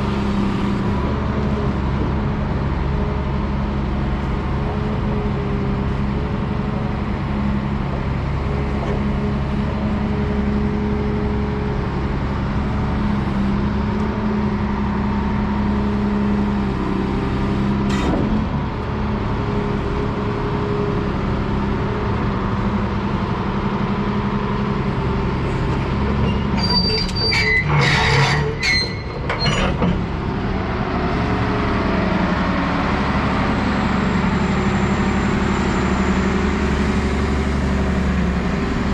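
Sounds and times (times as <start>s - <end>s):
diesel engine running: 0.0s - 38.9s
high squeals: 26.3s - 29.7s.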